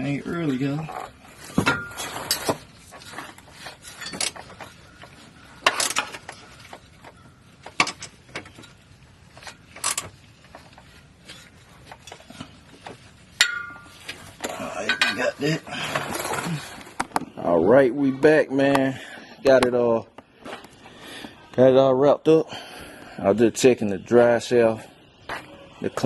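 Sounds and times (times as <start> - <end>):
objects clicking and knocking: 1.0 - 15.2.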